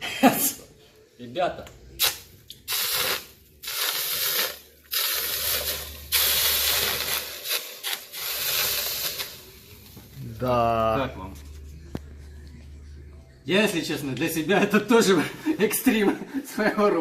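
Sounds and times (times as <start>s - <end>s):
water hissing into steam on hot glass: 2.6s - 9.9s.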